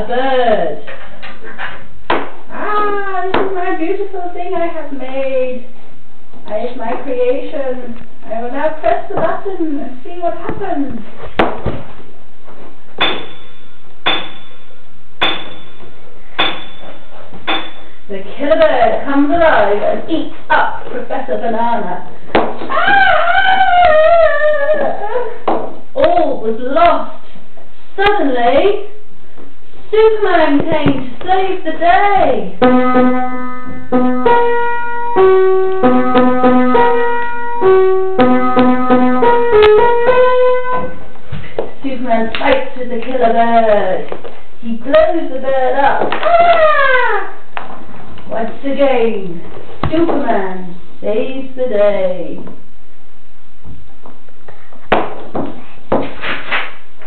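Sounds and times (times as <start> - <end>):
sharp knocks or clinks: 13.0 - 17.9
piano playing a tune: 32.6 - 41.0.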